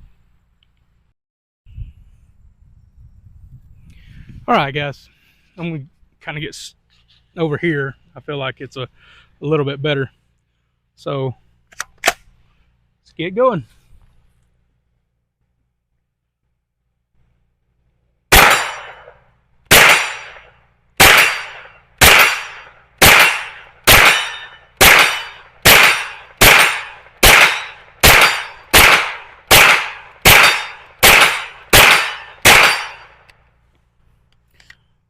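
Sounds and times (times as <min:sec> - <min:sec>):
carbine gunshots: 0:18.3 - 0:33.3.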